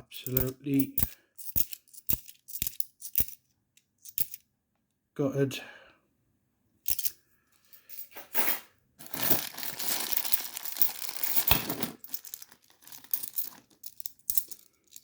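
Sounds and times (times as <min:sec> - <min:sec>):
coins clicking: 0:00.2 - 0:03.4, 0:04.0 - 0:04.4, 0:06.9 - 0:07.2, 0:07.8 - 0:15.0
plastic bag rustling: 0:09.0 - 0:14.6.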